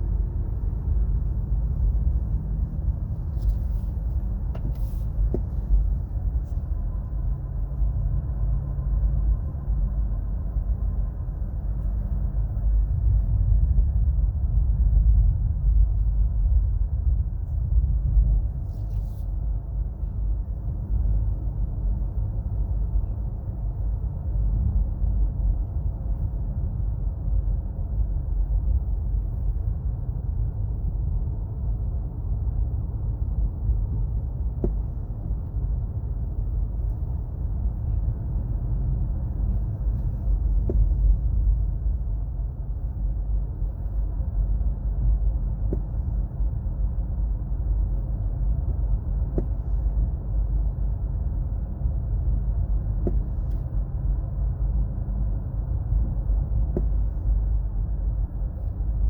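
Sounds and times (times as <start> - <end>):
car cabin road rumble: 0.0 - 59.0
whine rising with road speed: 0.0 - 59.0.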